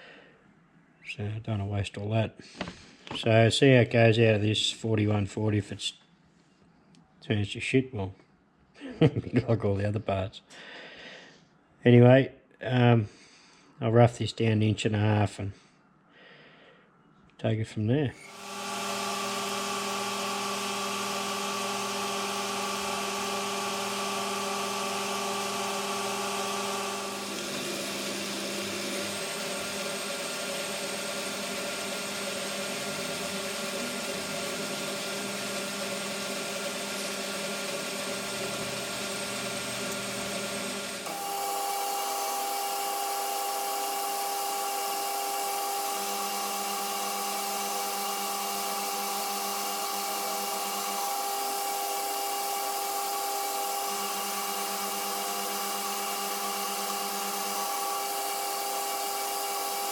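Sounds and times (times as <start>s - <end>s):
metal lathe whining: 18.2s - 59.9s.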